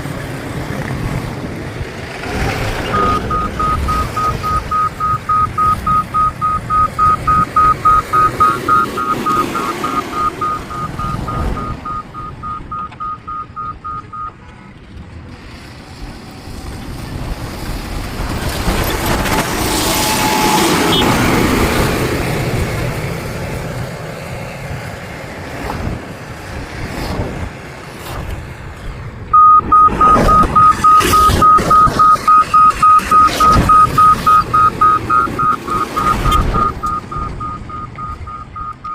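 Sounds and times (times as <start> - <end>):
machinery engines rumbling: 0.0 - 38.9
reversing alarm beeps: 2.8 - 14.3, 20.1 - 21.1, 29.4 - 38.9.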